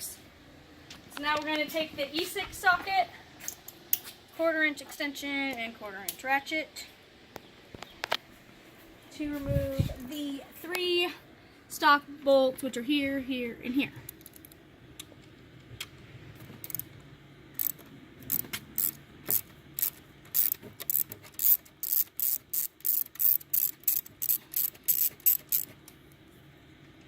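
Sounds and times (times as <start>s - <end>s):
ratchet clicking: 16.6s - 16.8s, 17.6s - 25.8s.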